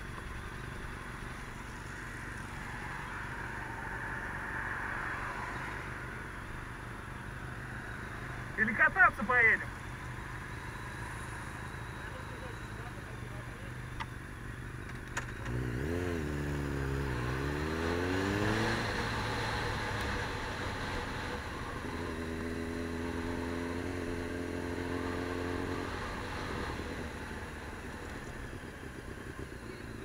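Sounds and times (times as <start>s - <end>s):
constant low drone: 0.0s - 30.0s
vehicle engine revving: 15.0s - 30.0s.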